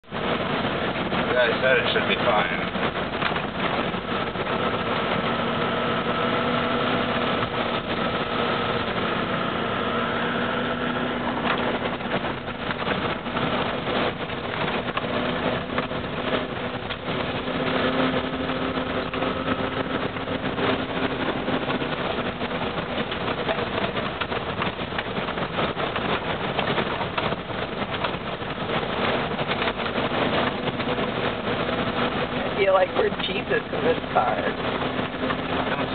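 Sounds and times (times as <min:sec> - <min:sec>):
car engine running: 0:00.0 - 0:35.9
vehicle driving through water: 0:00.0 - 0:35.9.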